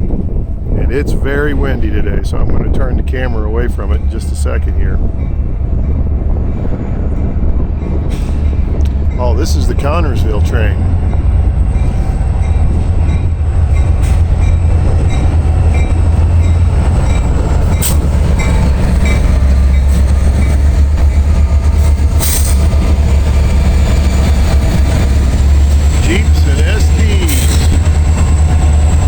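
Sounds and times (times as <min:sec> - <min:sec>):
freight train rumbling past: 0:00.0 - 0:29.0
wind buffeting microphone: 0:00.0 - 0:29.0.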